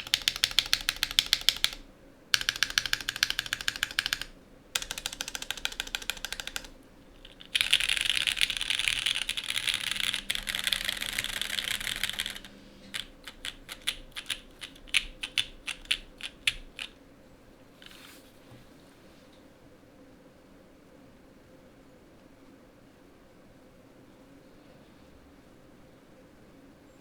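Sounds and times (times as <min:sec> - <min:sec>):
mechanical keyboard typing: 0:00.0 - 0:17.0.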